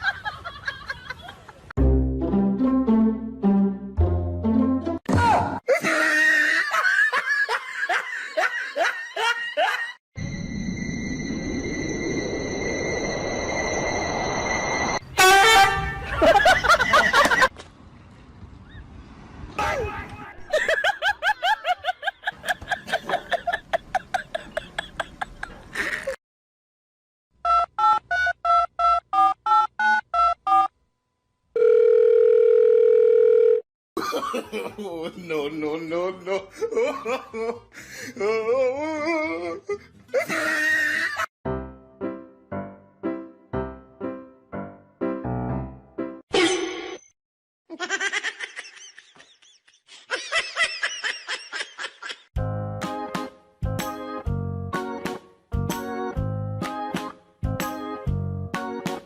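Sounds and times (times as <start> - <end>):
person laughing in rhythmic bursts: 0.0 - 1.7, 5.7 - 10.0, 16.0 - 17.5, 20.5 - 26.2, 34.0 - 35.4, 36.2 - 41.3, 47.7 - 52.3
music: 1.8 - 5.1, 41.5 - 46.2, 52.4 - 59.0
steady high tone: 10.2 - 15.0
long steady telephone tone: 31.5 - 33.6.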